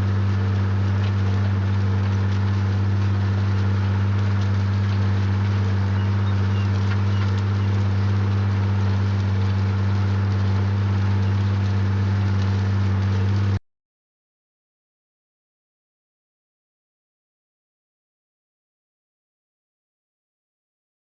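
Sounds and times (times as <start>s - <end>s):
tractor diesel engine droning: 0.0s - 13.6s.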